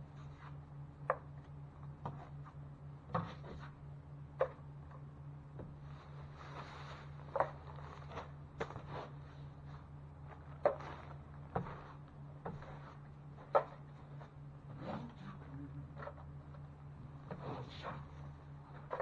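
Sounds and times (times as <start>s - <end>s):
steady low hum: 0.0s - 19.0s
drywall scraping and knocking: 5.6s - 19.0s.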